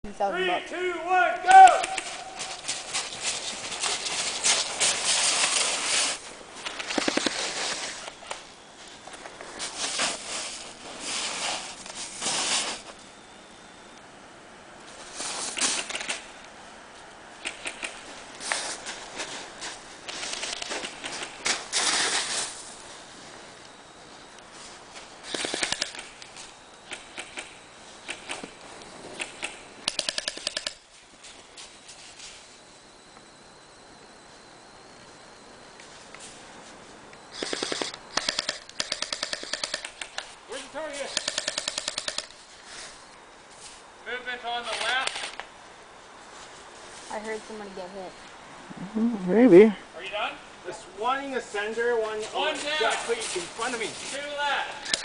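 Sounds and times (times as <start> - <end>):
airsoft guns firing bursts: 25.2 - 26.1, 29.2 - 30.8, 37.3 - 40.2, 40.9 - 42.4.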